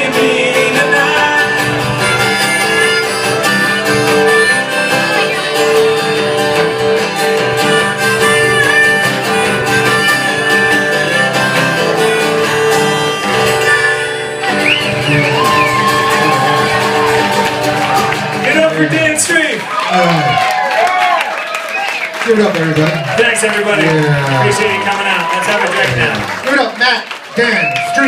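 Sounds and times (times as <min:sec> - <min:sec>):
acoustic guitar: 0:00.0 - 0:20.5
live band playing country music: 0:00.0 - 0:20.5, 0:21.9 - 0:28.0.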